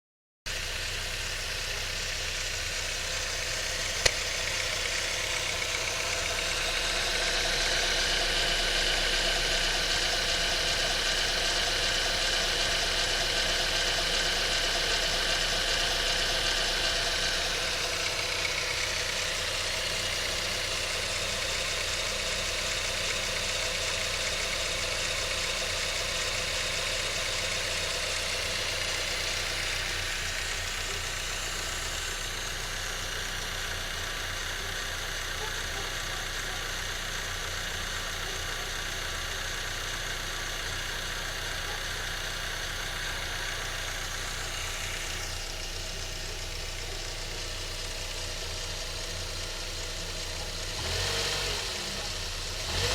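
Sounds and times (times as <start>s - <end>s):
car engine idling with clatter: 0.5s - 52.9s
sharp click: 4.0s - 4.4s.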